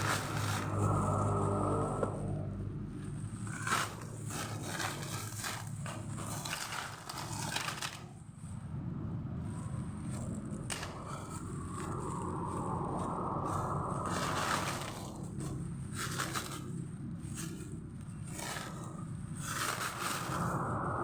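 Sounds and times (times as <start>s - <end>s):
packaging crinkling and scraping: 0.0s - 8.6s, 9.4s - 21.0s.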